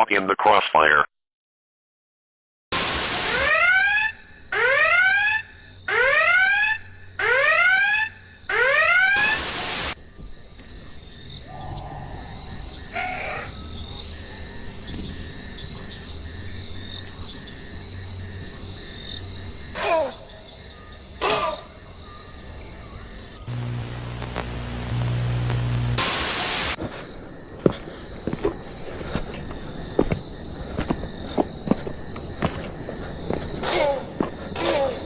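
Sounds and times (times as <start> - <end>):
static bursts: 2.8 - 3.5, 9.2 - 10.0, 23.2 - 35.0
electronic whooping alarm: 3.4 - 10.0
steady hiss: 9.2 - 35.0.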